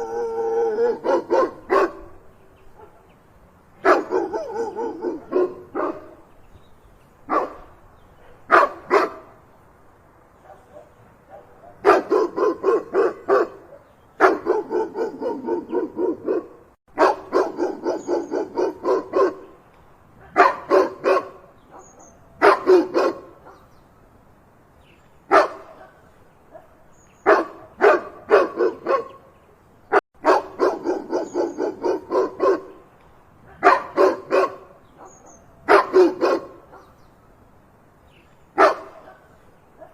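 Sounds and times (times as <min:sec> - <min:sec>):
dog barking loudly: 0:00.0 - 0:02.2, 0:03.8 - 0:06.2, 0:07.3 - 0:07.7, 0:08.4 - 0:09.3, 0:10.4 - 0:19.5, 0:20.2 - 0:23.6, 0:25.3 - 0:29.2, 0:30.2 - 0:32.8, 0:33.4 - 0:37.0, 0:38.6 - 0:39.9.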